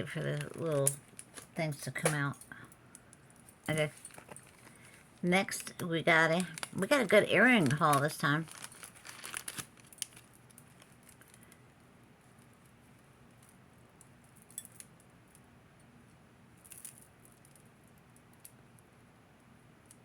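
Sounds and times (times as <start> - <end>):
jewelry clicks and bag rustles: 0.0 - 11.5, 13.3 - 14.9, 16.6 - 17.6
low room hum: 0.0 - 20.0.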